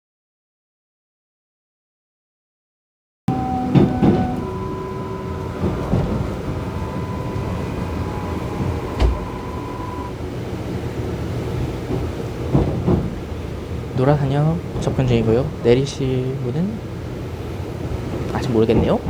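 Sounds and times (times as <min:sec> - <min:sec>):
thin steady whine: 0:03.3 - 0:12.4
train wheels rumbling on track: 0:03.3 - 0:19.0.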